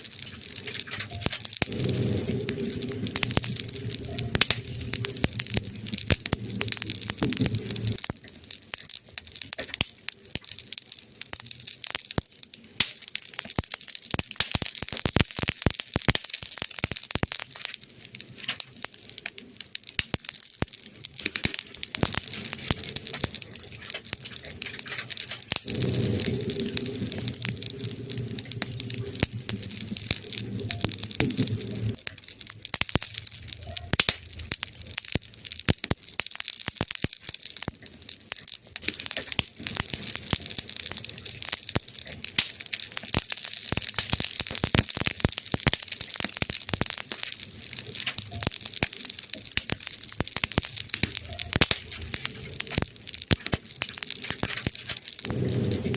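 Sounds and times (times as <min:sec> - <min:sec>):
campfire crackling and popping: 0:00.0 - 0:55.9
low rumble: 0:01.2 - 0:08.1, 0:22.1 - 0:33.6, 0:55.2 - 0:55.9.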